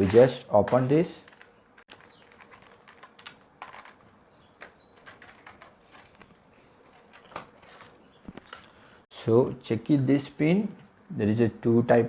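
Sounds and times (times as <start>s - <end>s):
hands opening plastic package: 0.0s - 6.4s.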